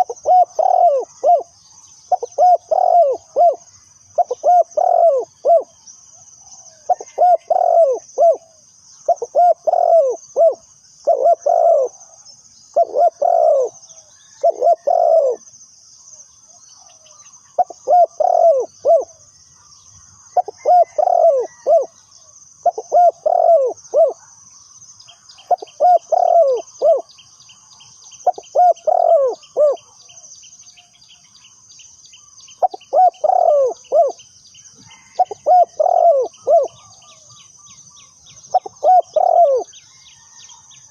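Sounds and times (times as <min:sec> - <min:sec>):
dove cooing: 0:00.0 - 0:01.5, 0:02.1 - 0:05.7, 0:06.7 - 0:12.1, 0:12.7 - 0:15.5, 0:16.9 - 0:19.2, 0:20.4 - 0:21.9, 0:22.6 - 0:24.3, 0:25.4 - 0:27.1, 0:28.2 - 0:30.0, 0:32.6 - 0:34.2, 0:34.8 - 0:40.4.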